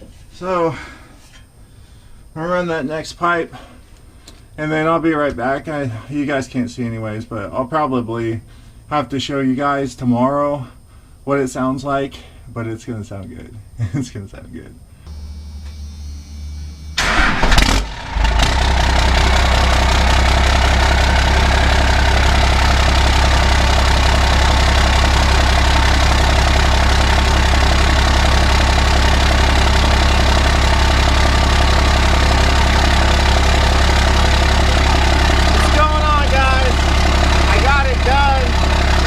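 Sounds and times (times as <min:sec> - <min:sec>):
diesel engine starting and idling: 0:16.5 - 0:39.0.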